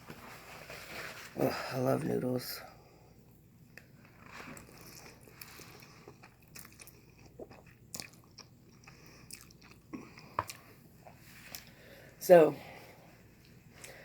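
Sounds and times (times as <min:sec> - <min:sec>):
chewing noodles: 0:03.8 - 0:11.8.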